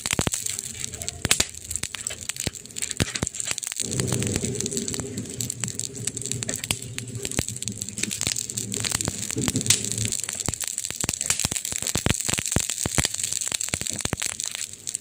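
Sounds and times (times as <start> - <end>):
burning wood crackling: 0.0 - 15.0
low hum: 3.8 - 10.2.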